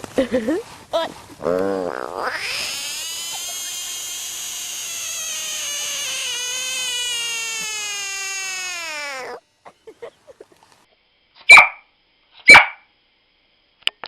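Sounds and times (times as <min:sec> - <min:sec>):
frog screaming: 0:01.4 - 0:09.4.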